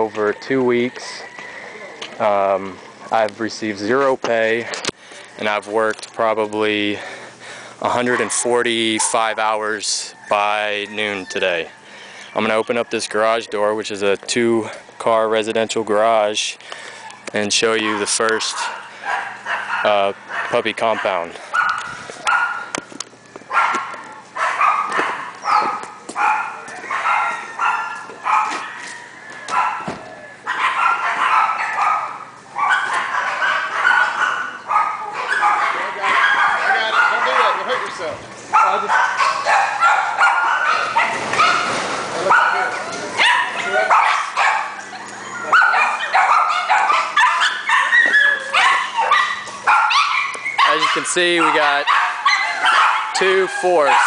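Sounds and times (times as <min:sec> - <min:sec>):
dogs barking: 0:00.0 - 0:14.0, 0:16.0 - 0:54.0.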